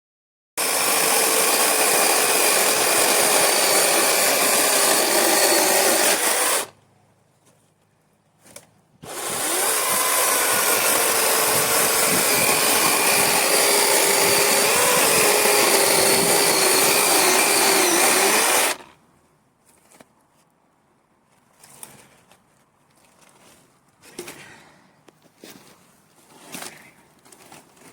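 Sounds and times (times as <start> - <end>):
electric chainsaw whining: 0.6 - 6.7, 9.0 - 18.9.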